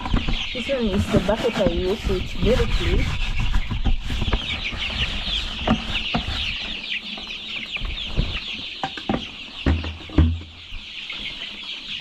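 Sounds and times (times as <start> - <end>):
chicks peeping: 0.0 - 12.0.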